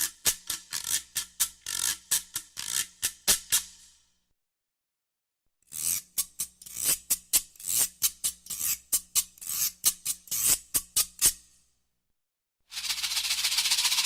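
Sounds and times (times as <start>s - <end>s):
hand shaker rattling: 12.7s - 14.0s.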